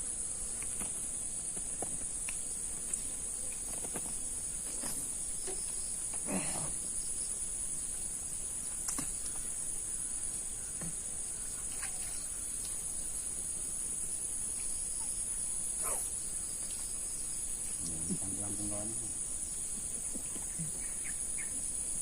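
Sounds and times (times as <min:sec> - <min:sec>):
insects droning: 0:00.0 - 0:22.0
faint knocks and rustles: 0:03.6 - 0:06.2.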